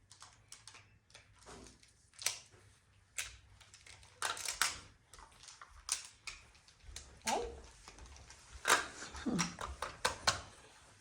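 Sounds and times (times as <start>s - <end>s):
plastic tiles clacking together: 0.0s - 1.4s, 3.1s - 7.4s, 8.0s - 10.5s.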